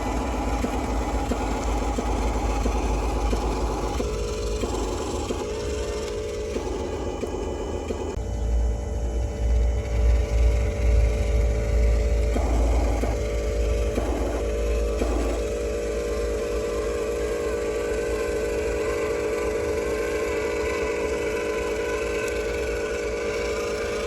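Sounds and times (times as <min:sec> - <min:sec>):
toy vehicle motors whining: 0:00.0 - 0:08.2, 0:09.8 - 0:24.0
grinding gear noise: 0:00.0 - 0:24.0
higher wavering whine: 0:00.0 - 0:24.0.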